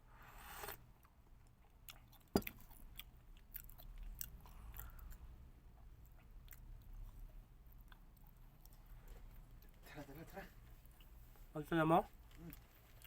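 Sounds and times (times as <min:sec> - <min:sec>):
chewing food: 0:01.0 - 0:09.8, 0:12.2 - 0:13.0.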